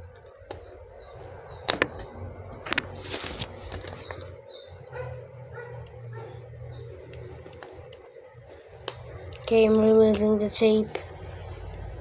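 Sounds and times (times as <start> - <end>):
packaging rustling scrape: 2.5 - 4.4.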